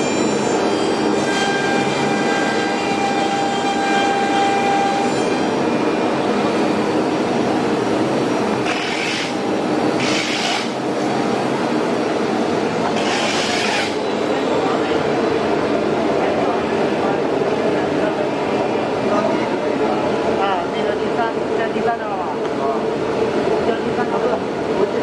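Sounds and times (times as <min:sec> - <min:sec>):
router machine running: 0:08.6 - 0:09.4, 0:10.0 - 0:10.8, 0:13.0 - 0:14.1.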